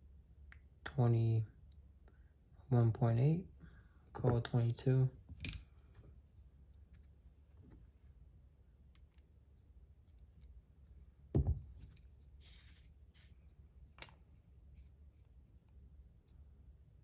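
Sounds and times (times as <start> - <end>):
solid knock on desk: 11.4 - 11.7.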